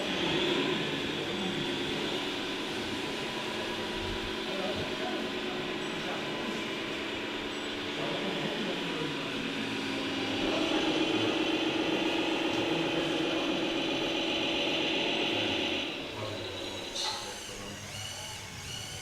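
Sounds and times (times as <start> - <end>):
model machine mechanical whine: 0.0 - 19.0.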